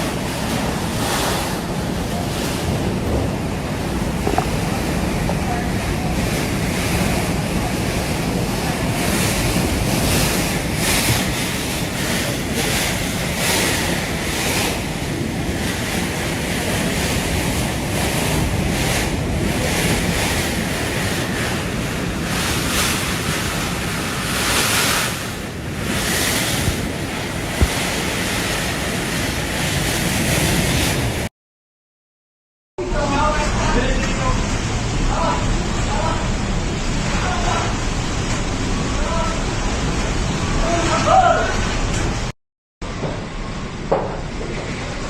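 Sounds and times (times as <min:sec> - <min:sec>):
strong wind buffeting microphone: 0:00.0 - 0:31.3.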